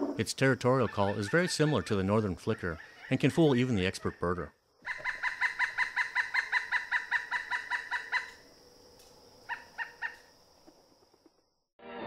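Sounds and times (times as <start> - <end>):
woodpecker calling: 0.0 - 8.5, 9.4 - 10.4.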